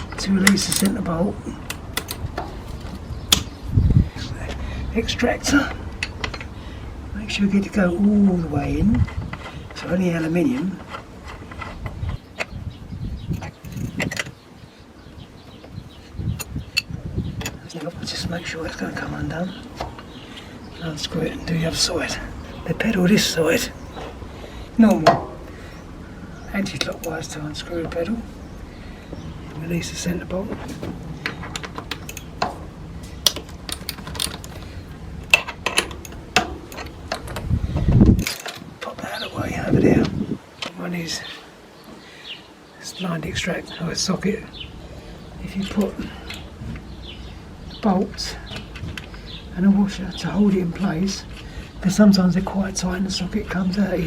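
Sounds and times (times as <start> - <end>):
handling noise: 19.5 - 38.9.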